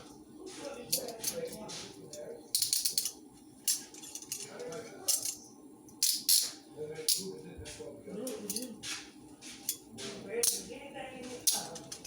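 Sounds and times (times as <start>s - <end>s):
faint background voices or music: 0.0s - 2.8s.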